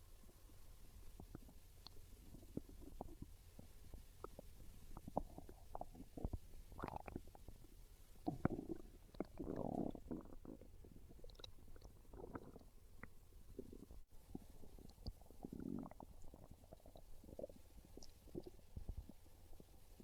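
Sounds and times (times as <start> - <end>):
stomach growling and gurgling: 1.0 - 20.0.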